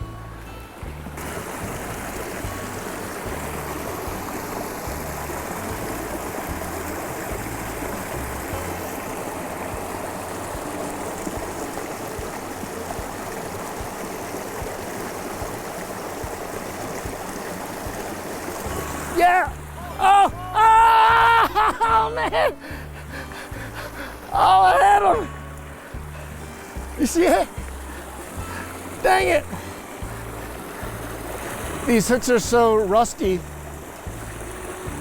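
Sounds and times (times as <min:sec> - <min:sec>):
low bass background music: 0:00.0 - 0:35.0
stream water rushing: 0:00.0 - 0:35.0.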